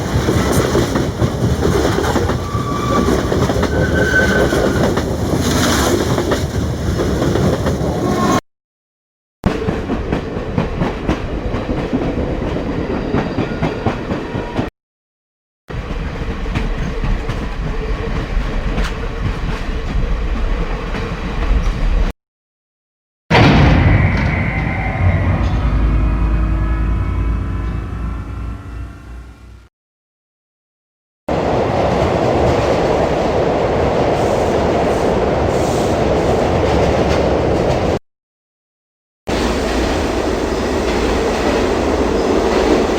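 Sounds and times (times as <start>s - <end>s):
train rumbling on track: 0.0s - 8.4s, 9.5s - 14.7s, 15.7s - 22.1s, 23.3s - 29.7s, 31.3s - 38.0s, 39.3s - 42.9s
train wheels rumbling: 0.0s - 8.4s.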